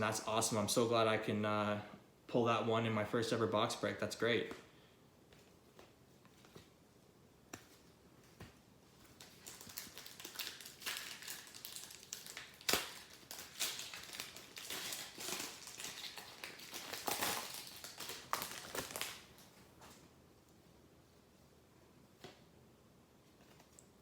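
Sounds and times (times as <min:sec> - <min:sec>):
foil wrappers crinkling and tearing: 0:09.0 - 0:19.5
loud foil snap: 0:12.1 - 0:14.3.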